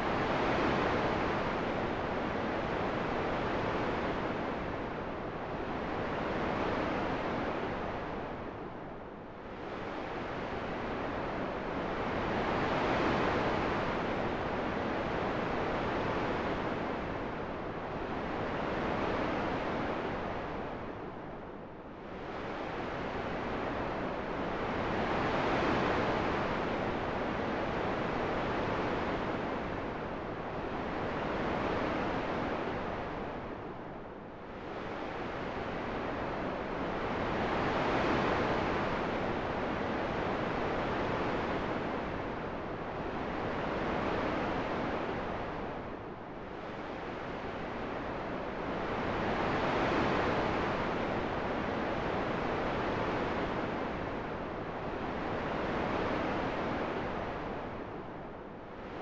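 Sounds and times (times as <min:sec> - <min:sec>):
gusting wind: 0:20.4 - 0:36.6.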